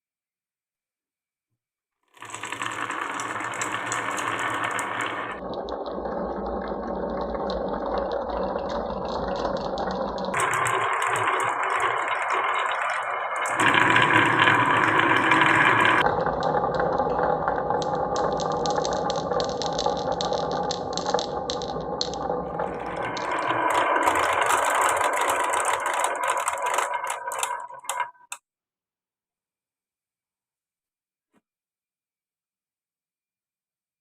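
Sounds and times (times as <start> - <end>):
marbles rolling down wooden tracks: 2.2 - 28.4.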